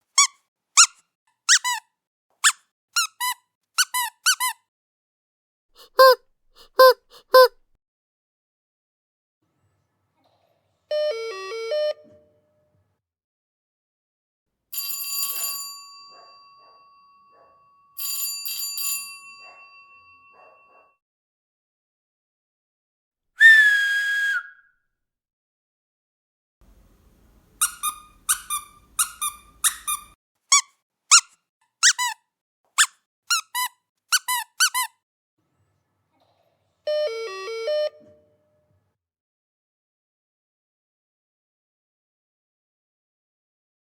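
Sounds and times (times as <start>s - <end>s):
squeak: 0.2s - 1.8s, 2.4s - 4.6s, 27.6s - 32.2s, 32.8s - 34.9s.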